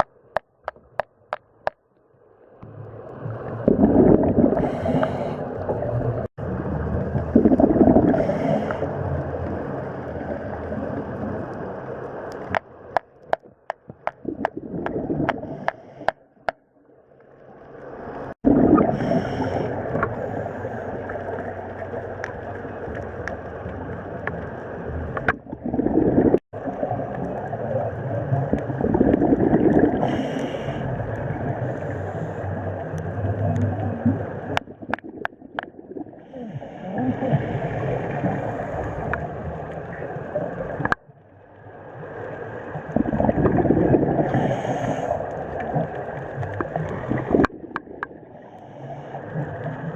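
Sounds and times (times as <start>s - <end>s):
underwater breathing bubbles gurgling: 2.6s - 11.7s, 13.9s - 16.5s, 18.3s - 41.0s, 42.3s - 49.9s.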